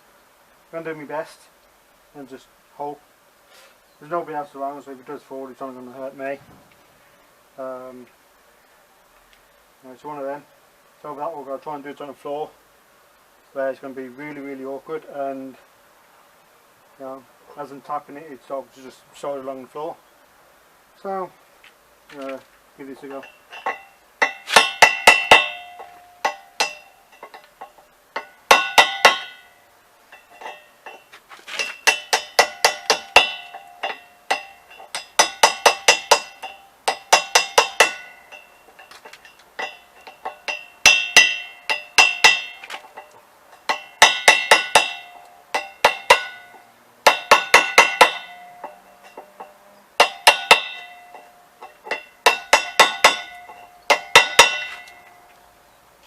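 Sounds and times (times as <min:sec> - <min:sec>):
metal ringing: 0:23.0 - 0:55.4
hammer tapping metal wheel: 0:23.2 - 0:29.5, 0:30.1 - 0:55.2.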